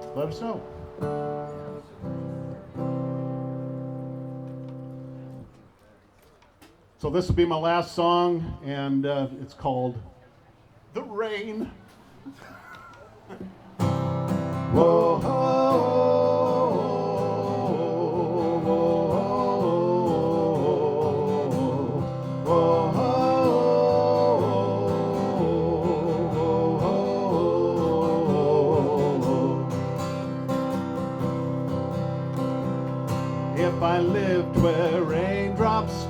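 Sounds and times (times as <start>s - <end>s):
acoustic guitar strumming: 0.0s - 5.6s, 13.4s - 36.0s
man singing wordless vocal: 14.6s - 30.2s, 33.5s - 36.0s.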